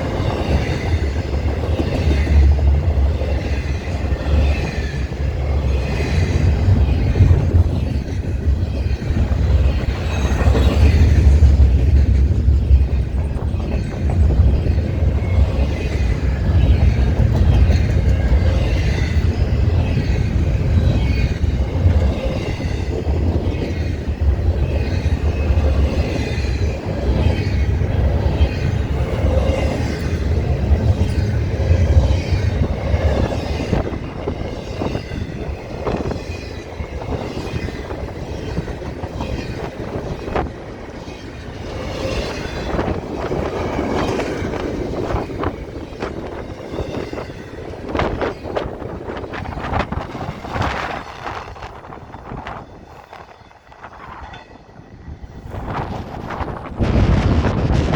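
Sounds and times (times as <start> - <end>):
freight train rumbling past: 0.0 - 57.9.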